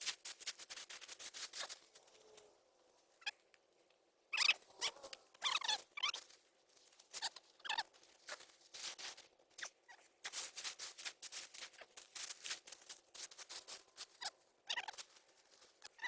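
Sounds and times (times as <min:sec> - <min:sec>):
squeaky scrapes: 0:04.4 - 0:06.3, 0:07.1 - 0:10.8, 0:13.3 - 0:15.2.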